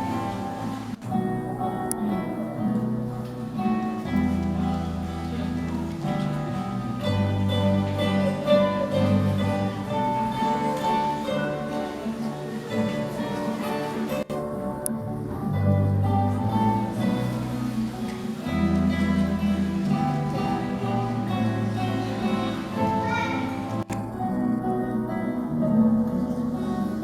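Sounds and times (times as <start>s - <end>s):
guitars playing chords: 0.0s - 27.0s
low bass notes: 0.0s - 27.0s.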